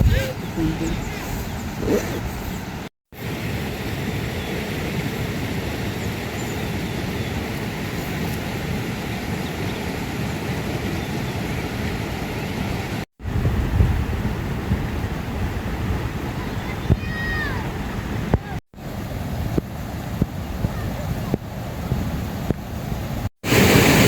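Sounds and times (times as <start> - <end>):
wind rumble on microphone: 0.0 - 2.8, 10.6 - 23.3.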